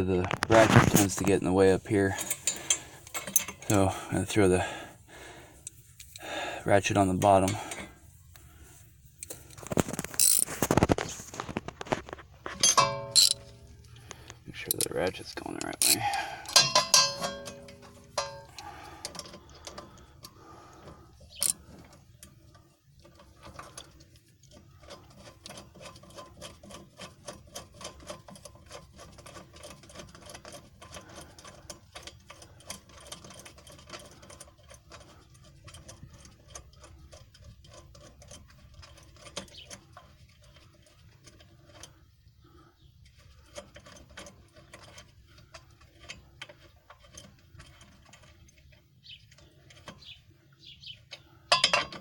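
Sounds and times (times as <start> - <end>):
sharp metal clank: 12.6 - 13.6, 15.8 - 18.7
socket ratchet clicking: 13.0 - 13.4.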